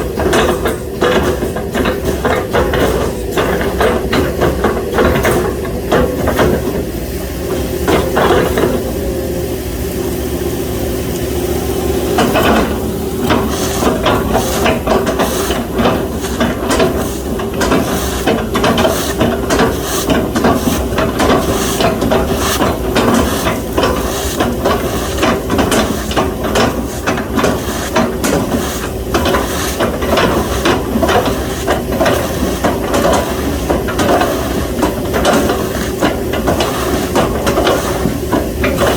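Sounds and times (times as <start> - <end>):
excavator diesel engine running: 0.0 - 38.9
hydraulics hissing: 0.0 - 38.9.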